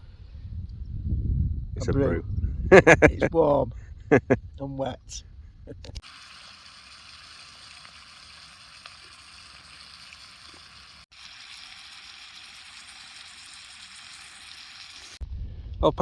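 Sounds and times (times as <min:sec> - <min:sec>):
eggs and bacon sizzling in a pan: 0:06.0 - 0:15.2.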